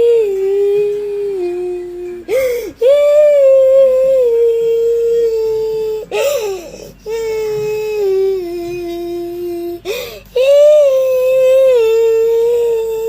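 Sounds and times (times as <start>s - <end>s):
child wailing: 0.0s - 13.0s
child gasping breath: 2.3s - 2.8s, 6.1s - 7.0s, 9.8s - 10.3s.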